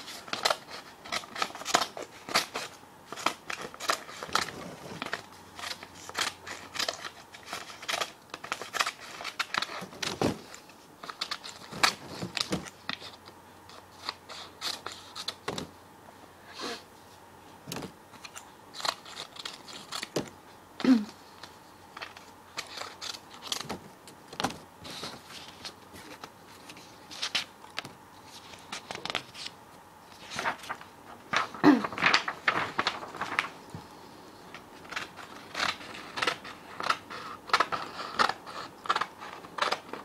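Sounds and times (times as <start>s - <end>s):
scissors snipping paper: 0.0s - 10.3s, 18.2s - 20.3s, 34.8s - 40.0s
paper rustling: 0.0s - 15.7s, 17.6s - 33.9s, 34.5s - 40.0s.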